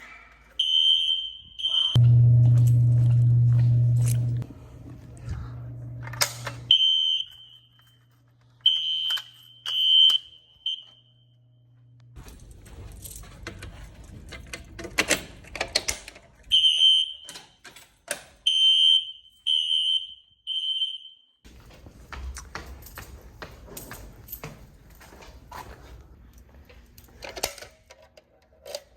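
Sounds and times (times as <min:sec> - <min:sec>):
fire alarm beeping: 0:00.6 - 0:04.4, 0:06.7 - 0:11.7, 0:16.5 - 0:17.6, 0:18.4 - 0:21.4.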